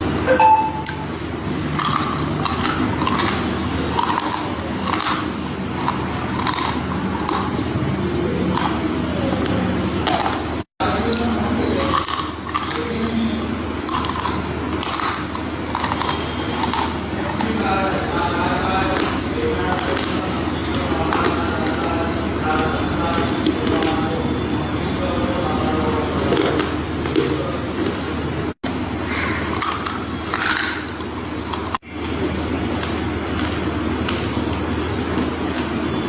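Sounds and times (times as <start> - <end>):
clay pieces being chewed: 1.7 - 7.8, 8.4 - 17.6.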